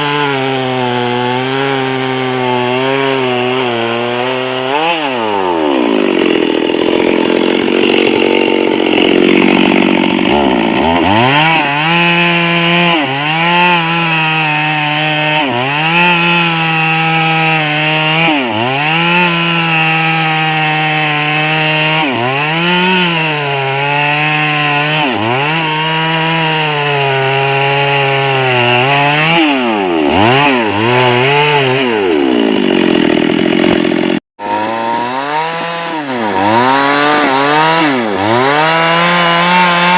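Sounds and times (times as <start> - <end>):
chainsaw engine revving: 0.0 - 39.9.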